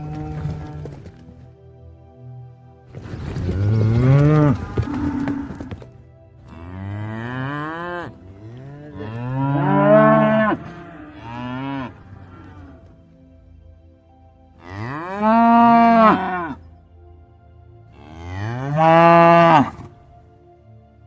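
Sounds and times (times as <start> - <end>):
cattle mooing: 0.0 - 1.2, 3.5 - 5.9, 6.5 - 13.0, 14.6 - 16.6, 18.0 - 20.0.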